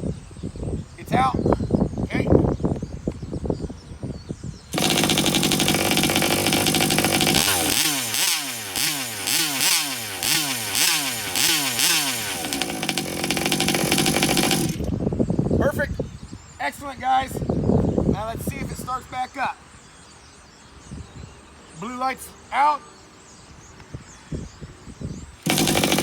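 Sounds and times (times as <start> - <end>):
small two-stroke engine revving: 4.7 - 15.0, 25.4 - 26.0.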